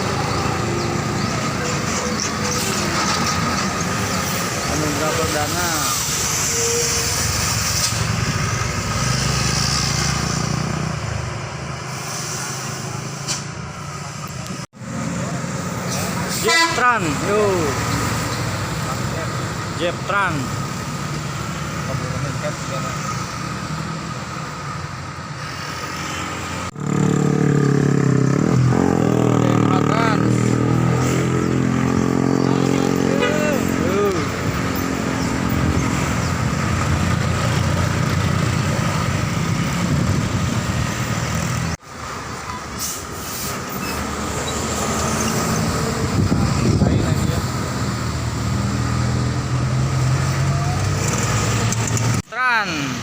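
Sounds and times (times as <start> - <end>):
bus diesel engine rumble: 0.0 - 9.4, 11.1 - 26.7, 29.7 - 53.0
road traffic noise: 0.0 - 53.0
horn note: 16.3 - 17.1.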